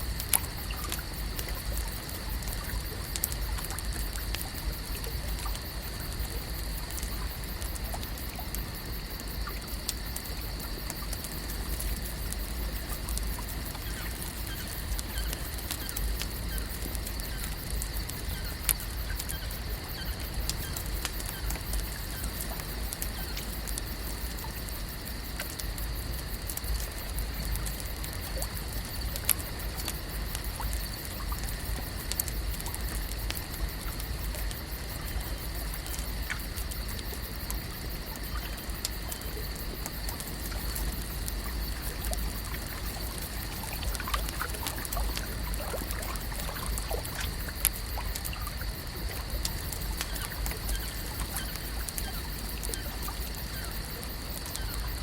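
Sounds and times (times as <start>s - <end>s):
water trickling and lapping: 0.0s - 55.0s
faint chirps: 50.0s - 55.0s.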